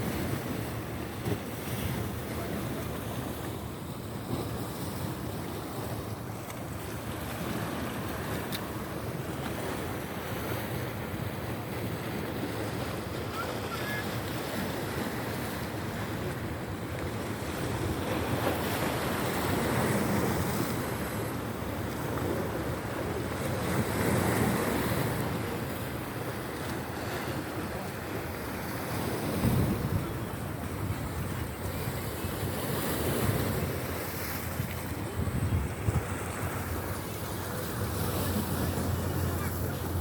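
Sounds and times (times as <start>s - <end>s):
waves washing on shore: 0.0s - 40.0s
wind on microphone: 28.8s - 40.0s.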